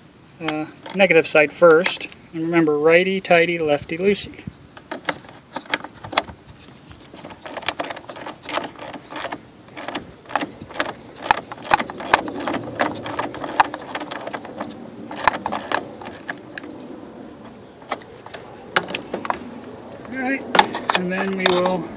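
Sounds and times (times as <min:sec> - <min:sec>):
ratchet wrench clicking: 0:07.4 - 0:16.3.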